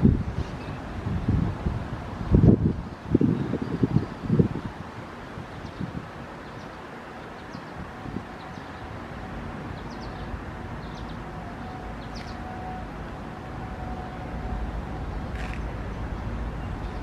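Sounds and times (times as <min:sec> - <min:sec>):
wind buffeting microphone: 0:00.0 - 0:17.0
faint steady tone: 0:06.5 - 0:17.0
bird chirps: 0:12.0 - 0:12.5.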